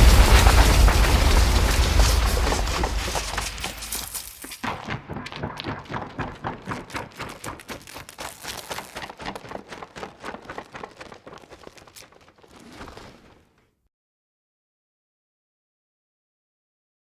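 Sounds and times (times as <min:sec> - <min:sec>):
rapid even knocks: 0:00.0 - 0:12.5.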